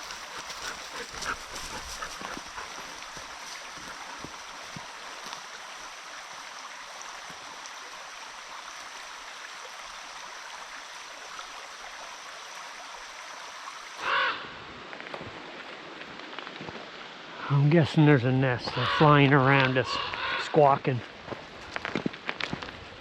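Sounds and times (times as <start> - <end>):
bird squawking: 14.0 - 14.4, 18.7 - 19.2.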